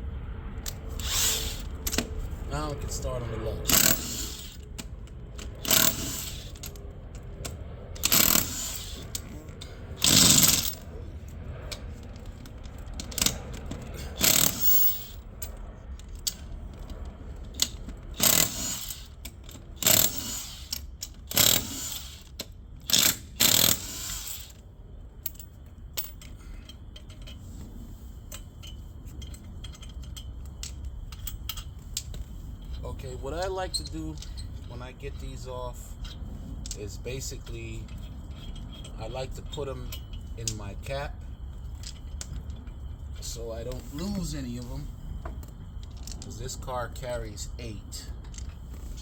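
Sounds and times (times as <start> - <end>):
power drill spinning lug nuts: 0.6 - 2.9, 3.6 - 10.9, 11.9 - 15.2, 16.3 - 24.6
small metallic clinks: 25.2 - 27.5, 28.2 - 33.0, 37.4 - 40.6.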